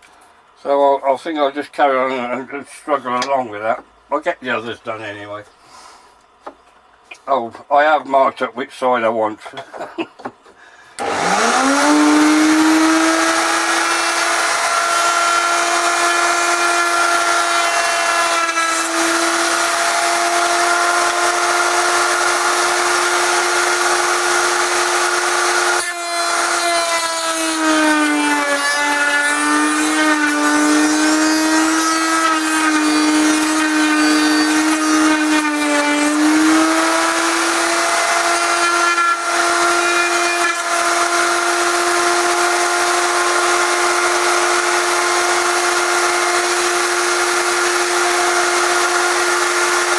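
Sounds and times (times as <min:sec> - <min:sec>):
router whining while cutting wood: 0:11.0 - 0:49.9.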